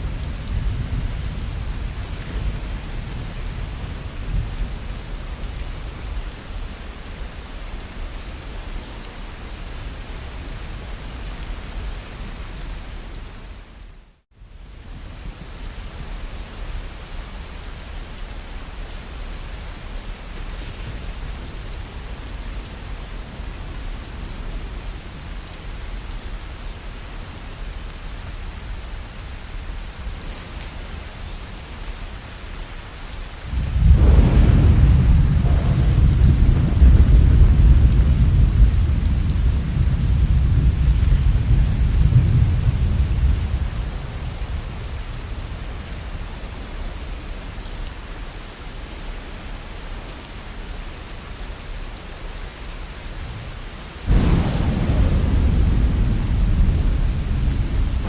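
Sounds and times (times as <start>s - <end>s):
heavy rain: 0.0s - 58.0s
thunderclap: 33.5s - 45.5s, 54.1s - 58.0s.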